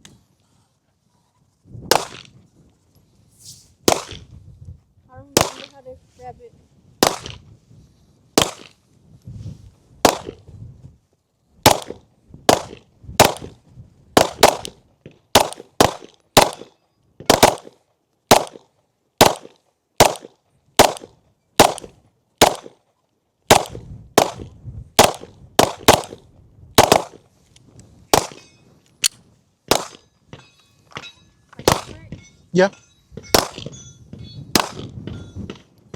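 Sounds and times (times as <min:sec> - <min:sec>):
handgun shots: 0:10.1 - 0:10.4, 0:15.4 - 0:16.7, 0:18.3 - 0:18.6, 0:19.2 - 0:22.7, 0:23.5 - 0:26.2, 0:28.2 - 0:28.4, 0:29.0 - 0:30.0, 0:31.6 - 0:32.0, 0:33.4 - 0:33.7, 0:34.6 - 0:34.9.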